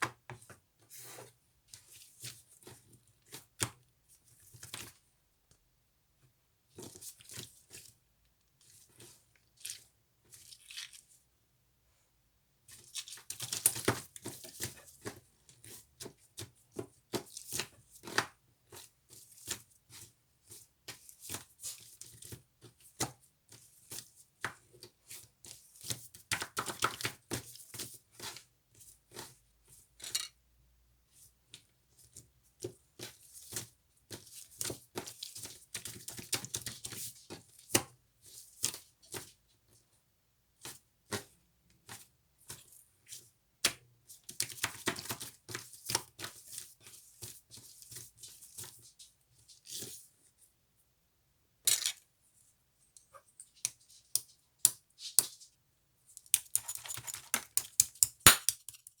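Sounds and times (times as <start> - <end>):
small hard objects clicking: 56.2 - 59.0.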